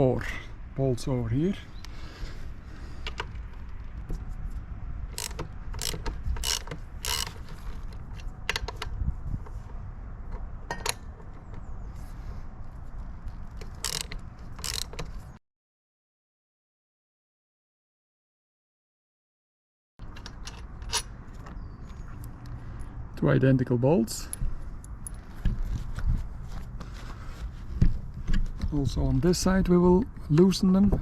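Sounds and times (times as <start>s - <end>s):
ratchet wrench clicking: 5.2s - 7.7s, 13.7s - 15.0s.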